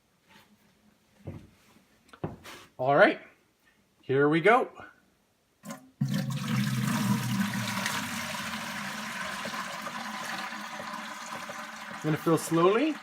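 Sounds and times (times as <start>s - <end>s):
water pouring into bucket: 5.6s - 13.0s.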